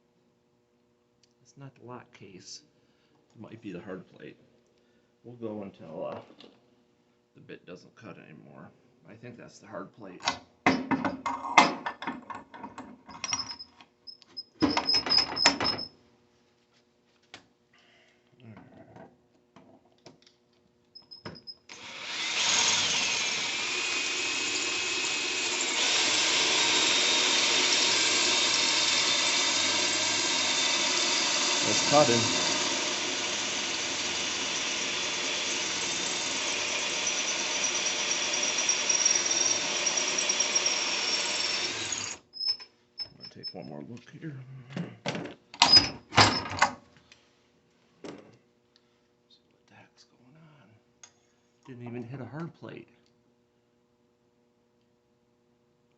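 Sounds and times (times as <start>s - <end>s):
power drill squealing into steel: 13.2s - 15.9s, 21.0s - 43.7s.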